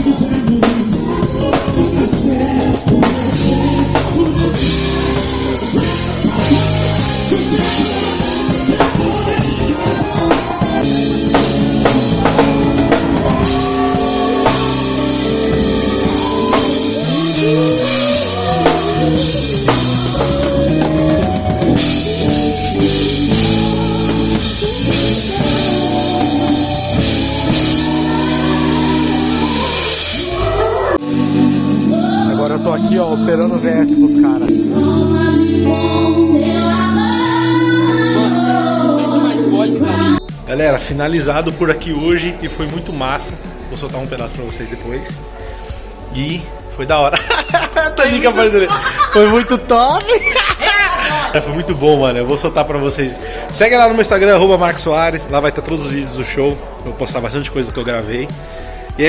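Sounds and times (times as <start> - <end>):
person singing: 0.0 - 40.4
worship band music: 0.0 - 59.0.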